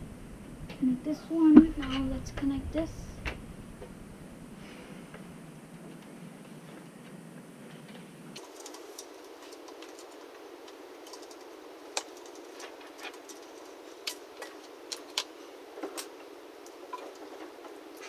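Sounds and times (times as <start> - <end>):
low background hiss: 0.0 - 18.0
small parts and tools clicking: 8.4 - 15.3.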